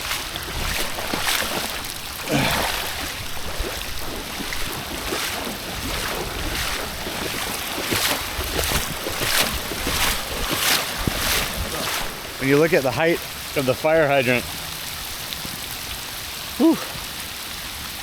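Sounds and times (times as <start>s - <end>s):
wind on microphone: 0.0s - 12.5s
heavy rain pouring: 0.0s - 18.0s.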